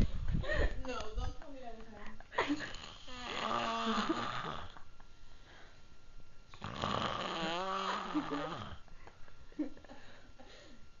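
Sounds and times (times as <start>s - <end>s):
person snoring: 2.7s - 4.8s, 6.5s - 8.8s.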